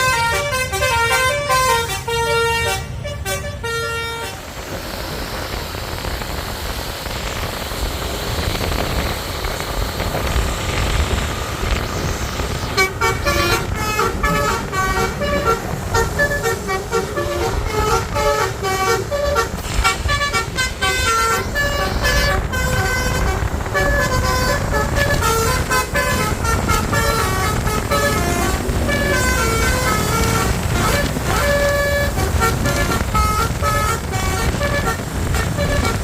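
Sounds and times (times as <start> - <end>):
musical bus horn melody: 0.0 - 4.5, 12.6 - 36.0
steady low rumble: 0.0 - 36.0.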